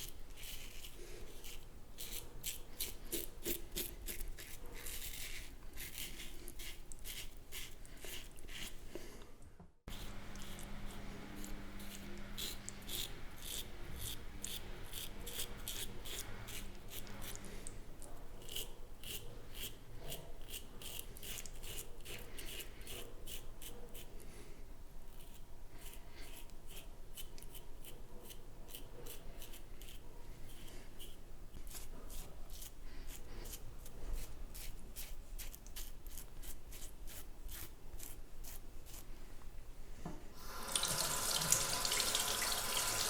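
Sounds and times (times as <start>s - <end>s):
razor scraping stubble: 0.0s - 8.8s, 9.9s - 17.8s, 25.1s - 39.1s.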